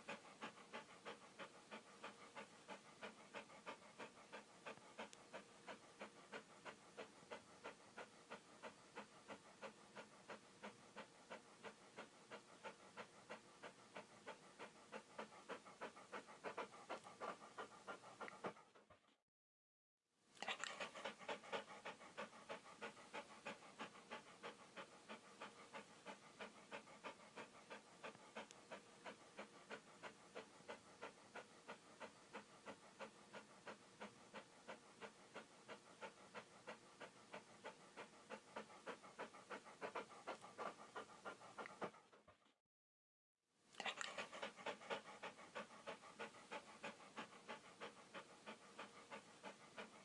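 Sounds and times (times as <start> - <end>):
dog panting: 0.0 - 19.2, 20.4 - 42.6, 43.8 - 50.0.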